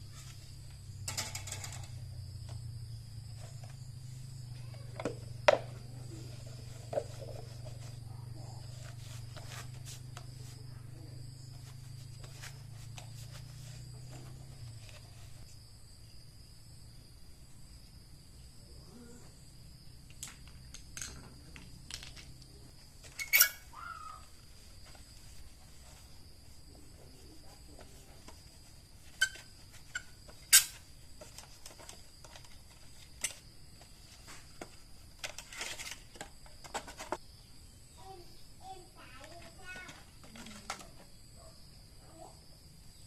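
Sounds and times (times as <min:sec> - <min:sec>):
metal parts and tools clinking: 0:01.1 - 0:02.0, 0:23.0 - 0:23.6.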